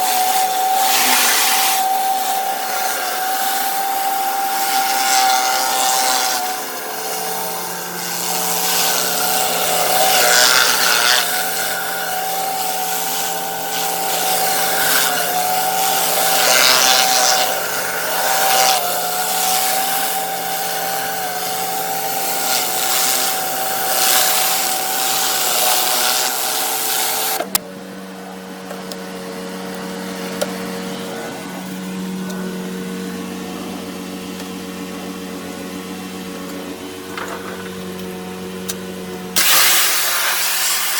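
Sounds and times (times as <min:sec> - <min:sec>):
pressure washer engine and pump: 0:00.0 - 0:40.9
pressure washer water spray hiss: 0:39.4 - 0:40.9.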